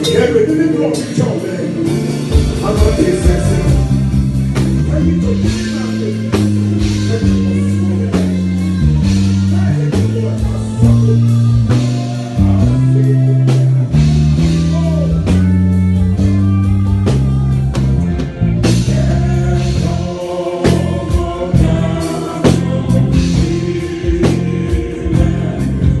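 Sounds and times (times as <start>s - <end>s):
band playing a song: 0.0s - 26.0s
person singing: 4.8s - 14.0s, 18.7s - 26.0s.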